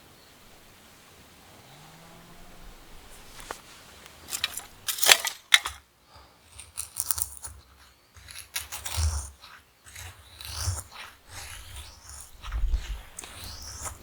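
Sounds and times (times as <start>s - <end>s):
metal parts clinking: 4.3s - 5.8s.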